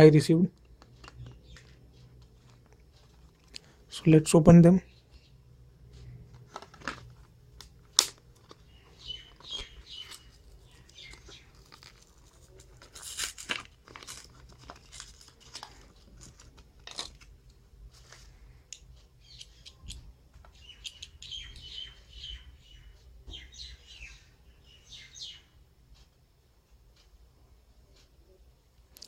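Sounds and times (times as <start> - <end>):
birds chirping: 0.2 - 6.3, 8.5 - 12.6, 19.0 - 25.6
padlocks clicking and handling: 18.7 - 20.0, 20.8 - 21.7.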